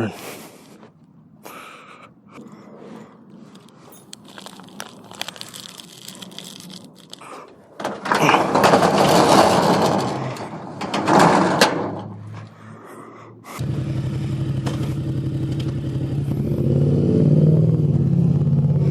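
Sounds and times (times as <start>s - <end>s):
rough rustling and rubbing: 2.4s - 11.6s
clicks and rattles: 3.5s - 12.6s.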